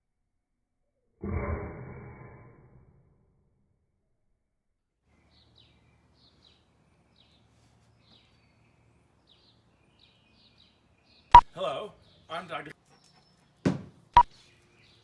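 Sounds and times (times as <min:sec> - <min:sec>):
faint outdoor background noise: 0:05.0 - 0:15.0.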